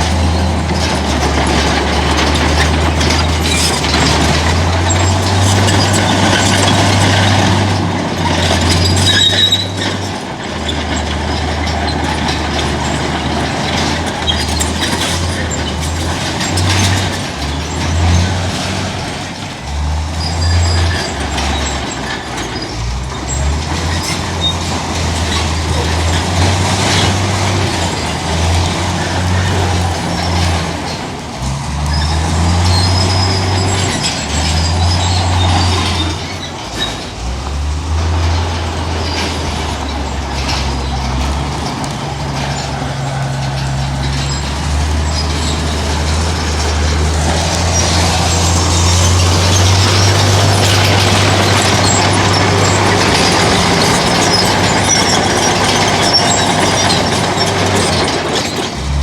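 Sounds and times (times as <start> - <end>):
heavy diesel engines revving: 0.0 - 59.0.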